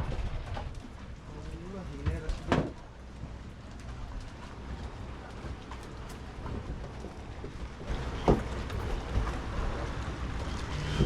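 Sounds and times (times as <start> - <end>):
boat engine rumbling: 0.0 - 11.0.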